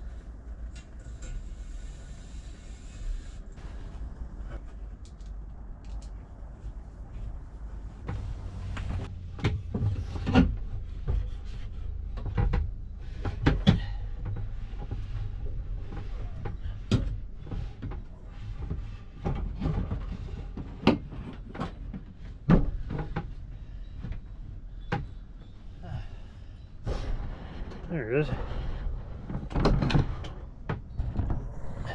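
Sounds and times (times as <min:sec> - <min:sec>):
steady low rumble: 0:00.0 - 0:20.8, 0:22.2 - 0:31.9
knocks and clunks of installation work: 0:08.0 - 0:31.9.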